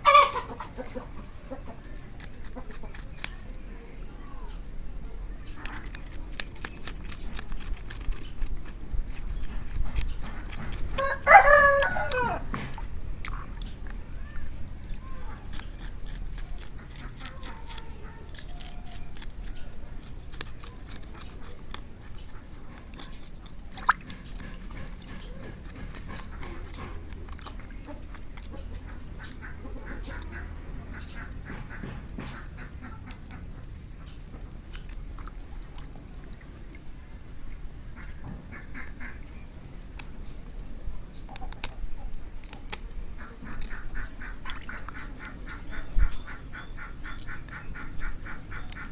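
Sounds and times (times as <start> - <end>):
rooster crowing: 0.0 - 0.5, 11.0 - 12.5
knife scraping and cutting fish: 1.8 - 3.6, 5.4 - 13.5, 14.8 - 30.4, 31.4 - 33.5, 34.1 - 35.3, 42.4 - 46.3.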